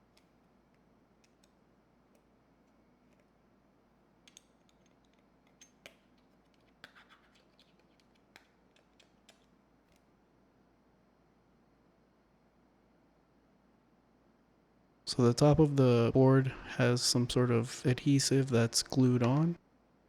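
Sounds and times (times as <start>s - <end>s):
small parts clicking and scratching: 4.3s - 10.1s.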